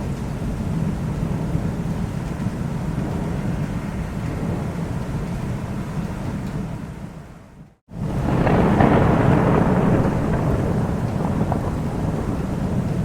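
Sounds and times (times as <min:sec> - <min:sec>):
rolling thunder: 0:02.8 - 0:06.6, 0:07.9 - 0:13.0
rain hissing: 0:07.9 - 0:13.0.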